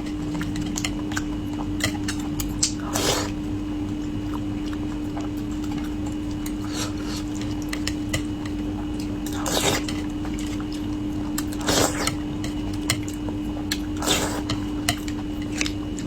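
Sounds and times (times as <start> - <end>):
steady hum: 0.0 - 16.0
wet mouth clicks while chewing: 1.1 - 3.3.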